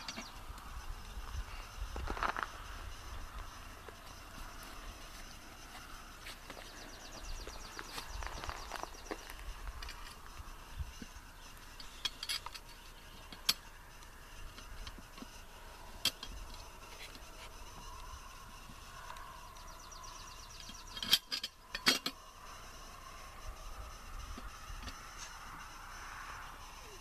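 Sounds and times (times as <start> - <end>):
metal parts and tools clinking: 0.0 - 0.4, 6.2 - 10.4, 11.0 - 13.7, 16.0 - 17.5, 20.1 - 22.5.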